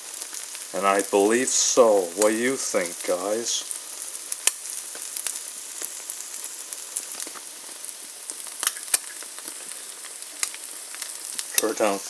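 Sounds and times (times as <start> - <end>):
butter sizzling in a frying pan: 0.0 - 12.0
sharp pops and crackles: 0.0 - 12.0.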